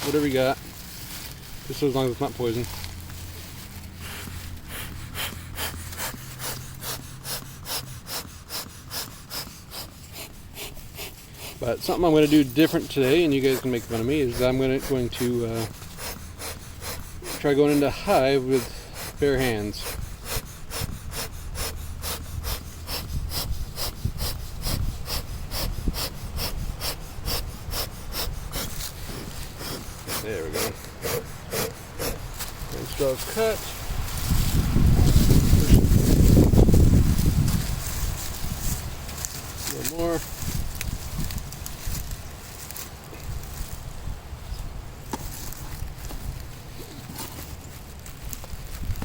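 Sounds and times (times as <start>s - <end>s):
smoker bellows puffing air: 0.0s - 43.8s.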